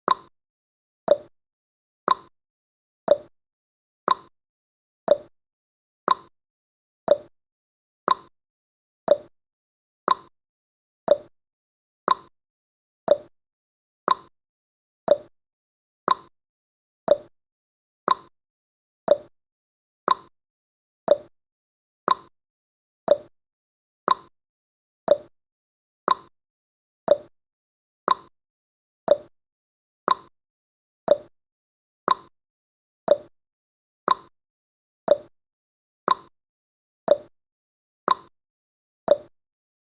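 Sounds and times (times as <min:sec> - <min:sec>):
clock tick-tock: 0:00.1 - 0:00.3, 0:01.1 - 0:01.3, 0:02.1 - 0:02.3, 0:03.1 - 0:03.3, 0:04.1 - 0:04.3, 0:05.1 - 0:05.3, 0:06.1 - 0:06.3, 0:07.1 - 0:07.3, 0:08.1 - 0:08.3, 0:09.1 - 0:09.3, 0:10.1 - 0:10.3, 0:11.1 - 0:11.3, 0:12.1 - 0:12.3, 0:13.1 - 0:13.3, 0:14.1 - 0:14.3, 0:15.1 - 0:15.3, 0:16.1 - 0:16.3, 0:17.1 - 0:17.3, 0:18.1 - 0:18.3, 0:19.1 - 0:19.3, 0:20.1 - 0:20.3, 0:21.1 - 0:21.3, 0:22.1 - 0:22.3, 0:23.1 - 0:23.3, 0:24.1 - 0:24.3, 0:25.1 - 0:25.3, 0:26.1 - 0:26.3, 0:27.1 - 0:27.3, 0:28.1 - 0:28.3, 0:29.1 - 0:29.3, 0:30.1 - 0:30.3, 0:31.1 - 0:31.3, 0:32.1 - 0:32.3, 0:33.1 - 0:33.3, 0:34.1 - 0:34.3, 0:35.1 - 0:35.3, 0:36.1 - 0:36.3, 0:37.1 - 0:37.3, 0:38.1 - 0:38.3, 0:39.1 - 0:39.3.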